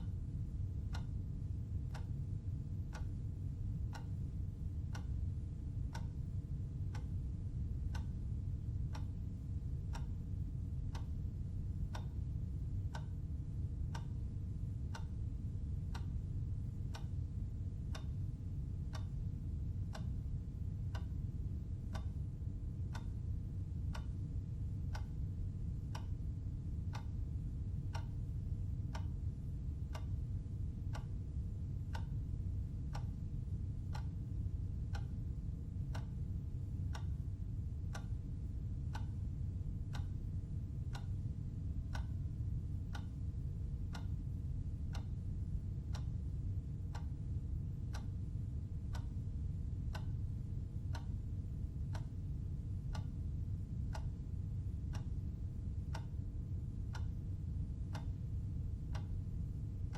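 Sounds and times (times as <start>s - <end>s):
clock ticking: 1.8s - 10.2s, 11.9s - 13.2s, 14.9s - 17.2s, 17.8s - 20.2s, 20.8s - 23.2s, 23.8s - 26.2s, 27.9s - 28.3s, 28.9s - 30.3s, 30.9s - 31.2s, 31.9s - 36.2s, 36.9s - 37.2s, 37.9s - 39.2s, 39.9s - 41.3s, 41.9s - 42.2s, 42.9s - 45.2s, 45.8s - 47.2s, 47.9s - 48.2s, 48.9s - 53.3s, 53.9s - 54.2s, 54.9s - 56.3s, 56.9s - 57.2s, 57.9s - 59.6s.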